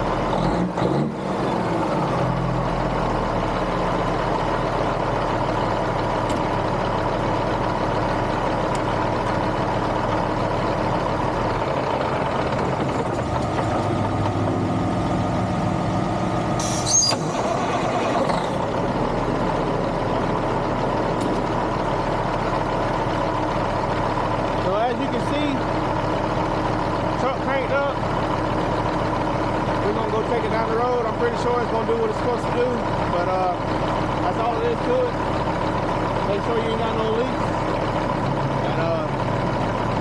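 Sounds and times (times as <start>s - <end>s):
diesel truck engine idling: 0.0s - 40.0s.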